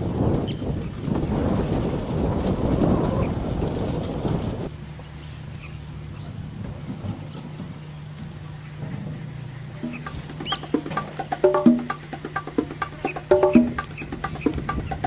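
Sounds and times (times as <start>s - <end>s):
high hiss: 4.6s - 15.0s
birds chirping: 7.2s - 15.0s
rising whistled bird call: 9.8s - 12.2s.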